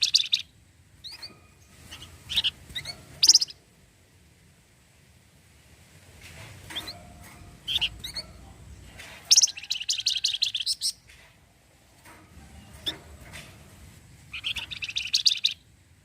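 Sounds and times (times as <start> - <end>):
songbird chirping: 0.0 - 4.2, 6.6 - 16.0
songbird rattling chatter: 12.0 - 15.6.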